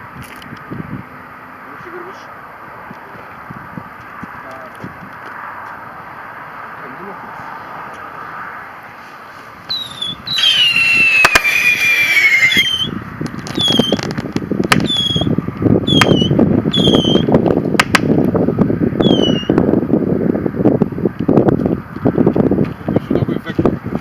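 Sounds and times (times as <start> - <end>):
rough rushing noise: 5.4 - 19.8
sharp cracks: 9.7 - 15.3, 15.9 - 18.4
whistling rockets: 9.7 - 18.0, 19.0 - 19.6.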